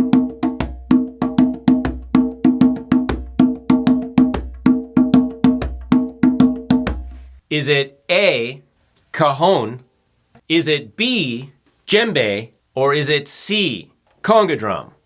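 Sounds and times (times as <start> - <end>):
conga drum played by hand: 0.0 - 7.4.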